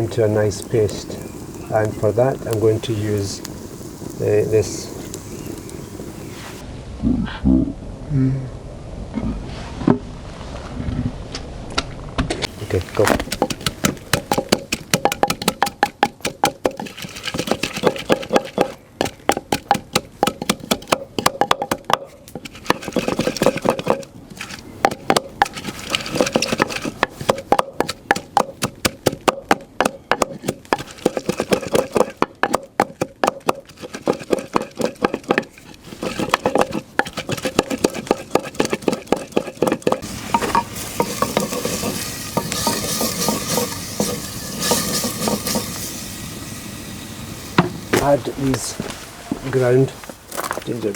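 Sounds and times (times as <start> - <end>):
onions sizzling in oil: 0.0 - 6.6, 30.1 - 49.6
pestle pounding in mortar: 13.0 - 45.7.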